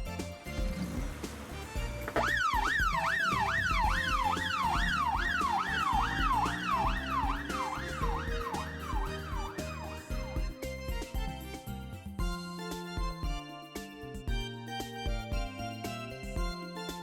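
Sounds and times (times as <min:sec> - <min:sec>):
background music with beat: 0:00.0 - 0:17.0
emergency siren yelping: 0:02.1 - 0:10.3.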